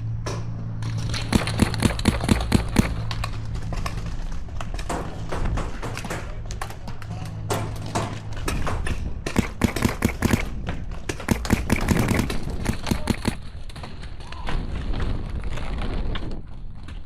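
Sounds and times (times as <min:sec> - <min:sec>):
paintball markers firing: 0:01.0 - 0:03.5, 0:09.3 - 0:13.5
wind rumbling on microphone: 0:08.4 - 0:17.0.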